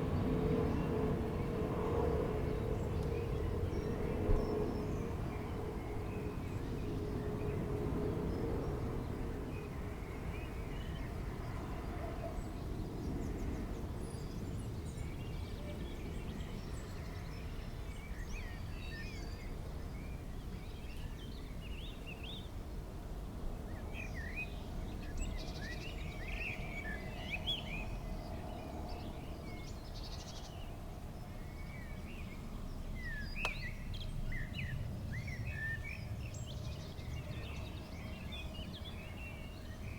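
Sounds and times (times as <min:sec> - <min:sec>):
songbirds chirping: 0:23.7 - 0:39.9.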